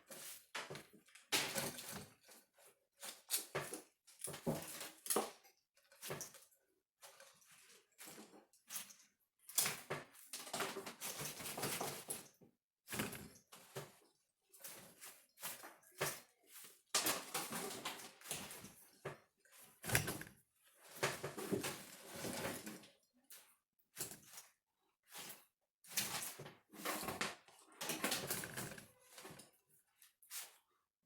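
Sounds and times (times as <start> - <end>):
wires rustling and scraping: 12.9 - 30.7.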